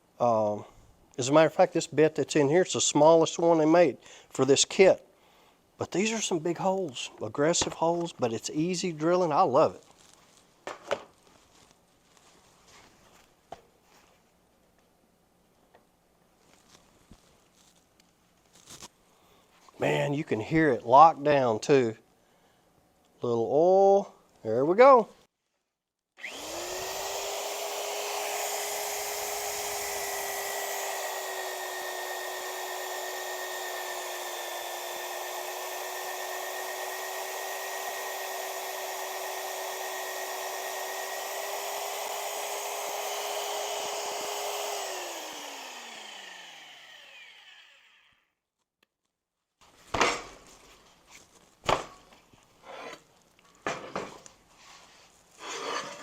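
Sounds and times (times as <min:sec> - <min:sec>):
cutter boring through steel: 0:26.2 - 0:48.2
magnetic drill whining: 0:26.2 - 0:48.2.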